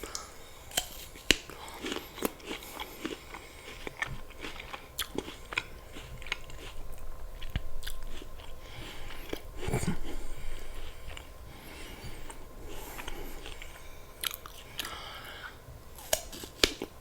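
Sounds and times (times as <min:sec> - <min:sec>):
crunching and chewing apple: 0:00.0 - 0:17.0.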